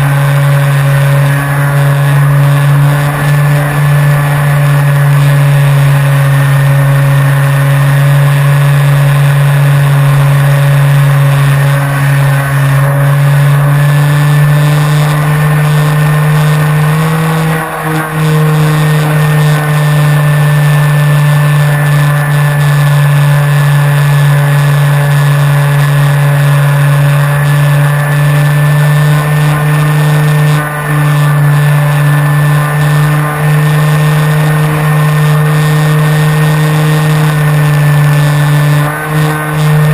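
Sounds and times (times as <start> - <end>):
airflow noise: 0.0 - 39.9
electric propeller drone: 0.0 - 39.9.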